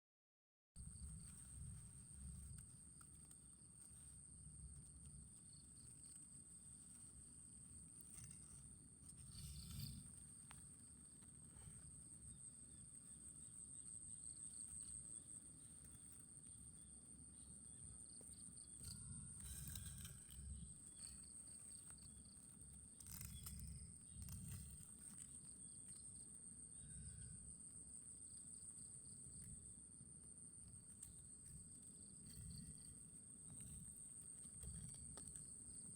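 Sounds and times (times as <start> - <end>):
rustles: 0.9 - 12.3
insects trilling: 1.0 - 29.7.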